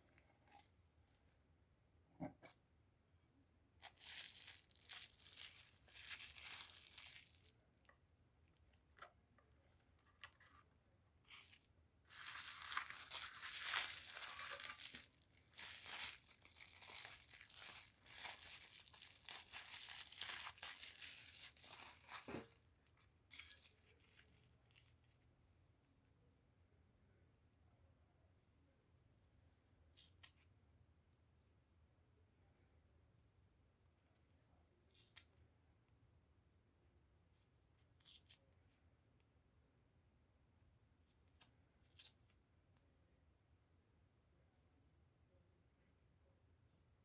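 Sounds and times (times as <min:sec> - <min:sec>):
packaging tearing and crinkling: 0:03.8 - 0:07.5, 0:11.4 - 0:22.6.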